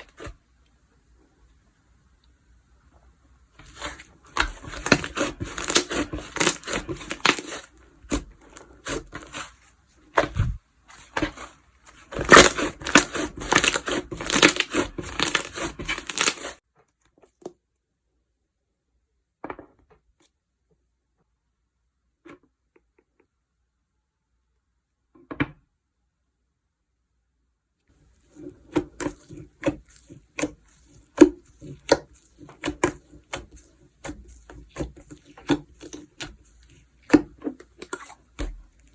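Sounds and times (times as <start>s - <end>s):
slime crackling and popping: 3.6s - 9.4s, 12.0s - 16.6s.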